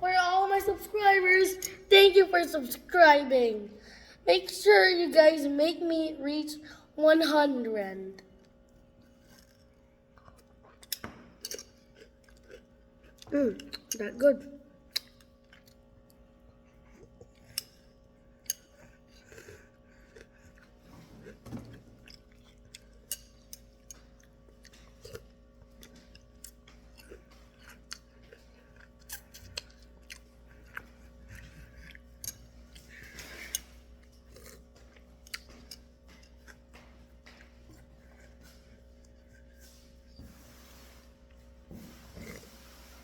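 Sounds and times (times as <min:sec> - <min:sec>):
faint steady hum: 0:00.0 - 0:43.0
person chewing crunchy cereal: 0:08.6 - 0:14.1, 0:14.9 - 0:40.1.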